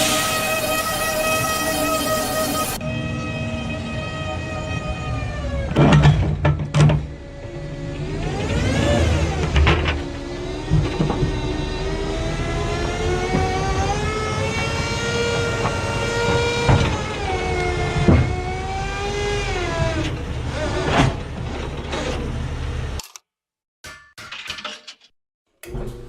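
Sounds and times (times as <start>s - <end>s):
heavy machinery whine: 0.0s - 5.9s
sharp knocks and clanks: 5.8s - 7.1s, 23.8s - 25.8s.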